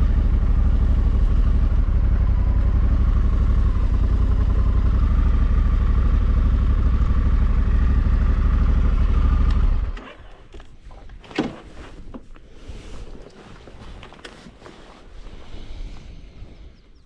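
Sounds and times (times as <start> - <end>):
motorcycle engine running: 0.0 - 10.4.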